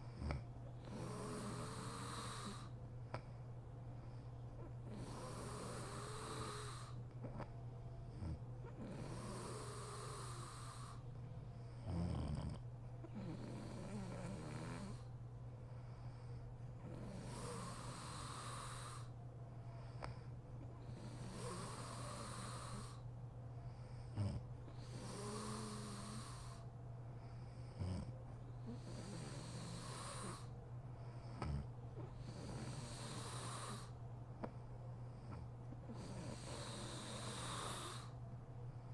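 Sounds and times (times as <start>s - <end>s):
woman snoring: 0.0s - 2.8s, 4.9s - 7.0s, 8.2s - 11.0s, 11.8s - 15.1s, 16.8s - 19.1s, 20.8s - 23.0s, 24.1s - 26.7s, 27.8s - 30.5s, 31.4s - 34.0s, 35.3s - 38.2s.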